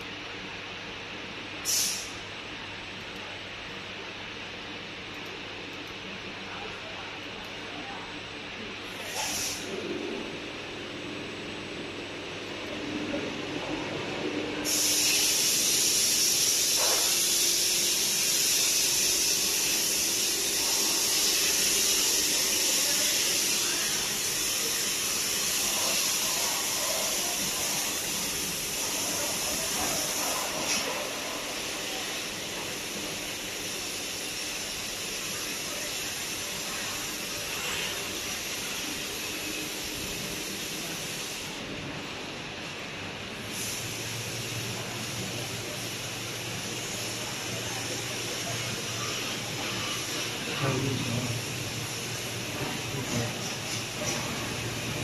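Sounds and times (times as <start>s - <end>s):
welding machine gas hiss: 1.5s - 2.4s, 8.8s - 9.8s, 14.6s - 42.2s, 43.2s - 55.0s.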